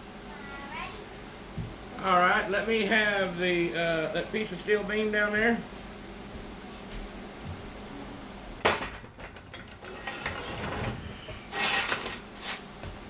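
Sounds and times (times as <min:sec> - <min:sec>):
steel clinking and rubbing: 0:09.7 - 0:12.6
steel scraping: 0:09.8 - 0:12.6.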